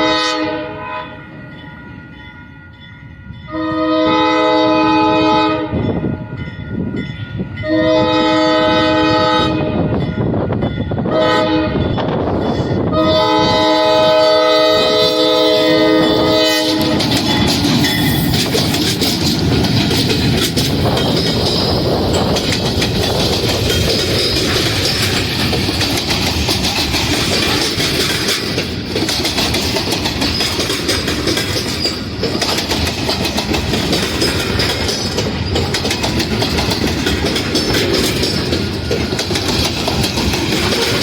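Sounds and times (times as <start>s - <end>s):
locomotive horn blowing: 0.0s - 1.4s, 3.5s - 6.2s, 7.6s - 10.0s, 11.1s - 12.0s, 12.9s - 17.5s
train wheels clacking over rails: 10.0s - 41.0s.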